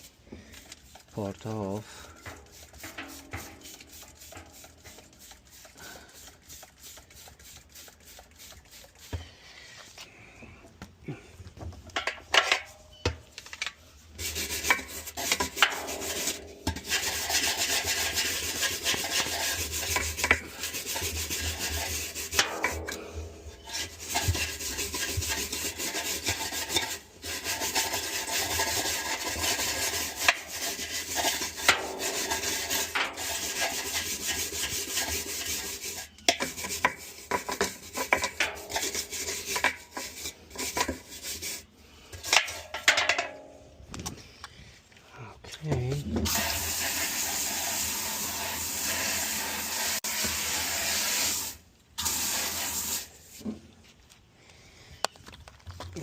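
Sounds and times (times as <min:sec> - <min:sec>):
scratchy scrubbing by hand: 0:00.8 - 0:09.2, 0:14.0 - 0:41.7
scrapes and knocks: 0:02.0 - 0:10.0, 0:11.5 - 0:44.2.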